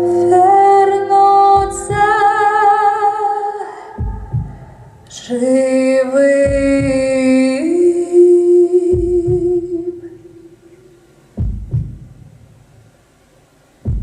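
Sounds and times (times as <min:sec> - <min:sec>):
backing track with low thumps: 0:00.0 - 0:02.5, 0:04.0 - 0:05.4, 0:06.3 - 0:07.3, 0:08.8 - 0:14.0
woman singing long held note: 0:00.0 - 0:04.0, 0:05.1 - 0:10.8.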